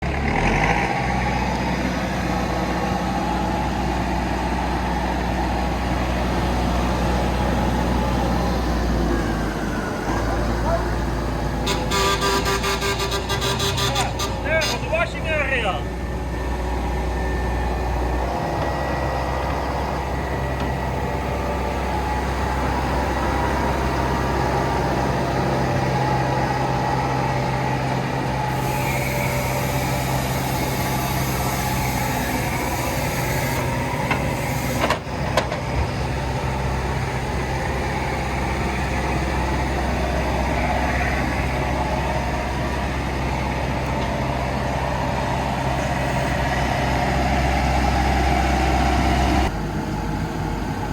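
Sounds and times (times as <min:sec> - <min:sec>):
diesel engine running: 0:00.0 - 0:50.9.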